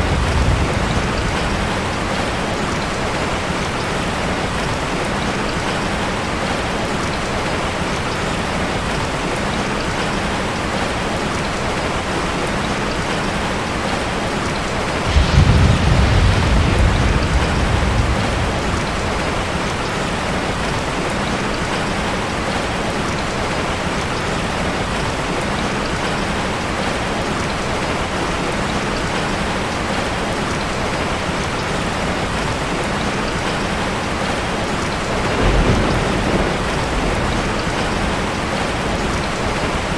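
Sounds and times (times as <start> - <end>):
thunder rumble: 0.0 - 5.3, 14.9 - 21.8, 33.1 - 39.9
heavy rain falling: 0.0 - 39.9.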